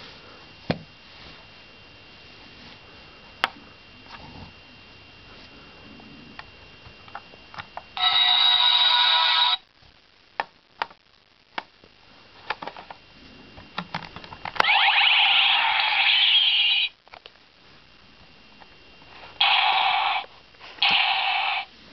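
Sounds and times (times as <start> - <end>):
toy belt electronic sound effects: 8.0 - 9.6, 14.6 - 16.9, 19.4 - 21.7.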